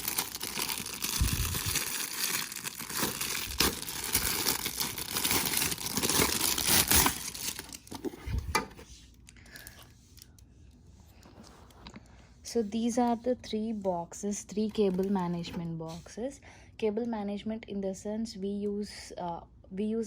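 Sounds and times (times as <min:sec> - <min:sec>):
packaging crinkling and rustling: 0:00.0 - 0:10.3, 0:14.5 - 0:15.7.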